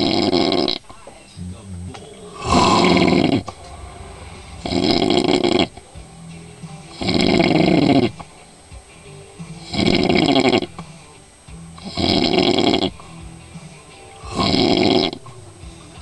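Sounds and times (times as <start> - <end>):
man snoring: 0.0 - 0.8, 2.1 - 4.0, 4.6 - 5.9, 6.9 - 8.2, 9.5 - 10.8, 11.8 - 13.1, 14.2 - 15.7.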